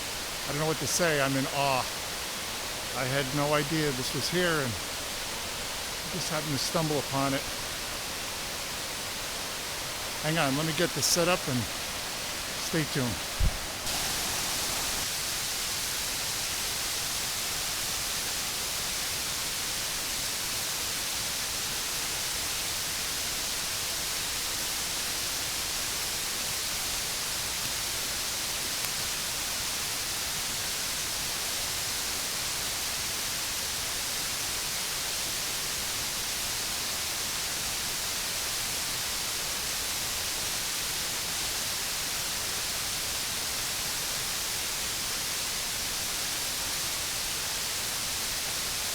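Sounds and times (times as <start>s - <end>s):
waterfall roaring: 0.0s - 15.9s.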